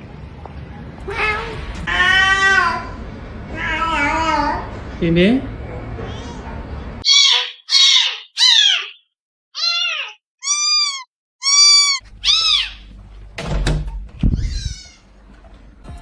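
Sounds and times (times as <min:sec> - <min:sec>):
cat meowing: 0:07.0 - 0:09.0, 0:09.6 - 0:12.9, 0:14.3 - 0:15.0.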